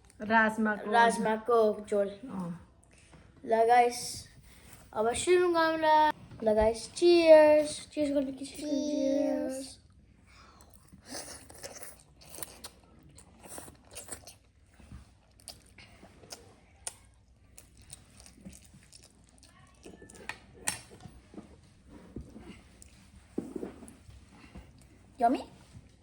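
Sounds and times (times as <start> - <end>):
people chewing food: 8.5 - 26.0.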